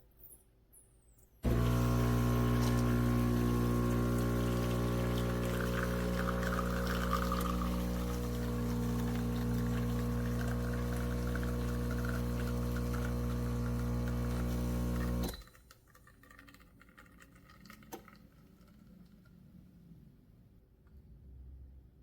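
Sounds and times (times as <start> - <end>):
espresso machine pump humming: 1.4 - 15.4
liquid pouring: 1.4 - 19.4.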